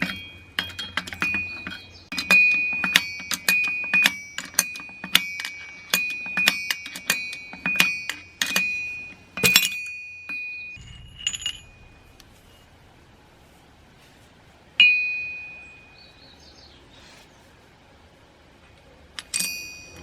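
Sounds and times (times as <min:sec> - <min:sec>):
light metal clink: 0:00.0 - 0:12.6, 0:19.2 - 0:20.0
metal striking steel part ringing: 0:00.0 - 0:12.8, 0:14.8 - 0:16.0, 0:19.2 - 0:20.0.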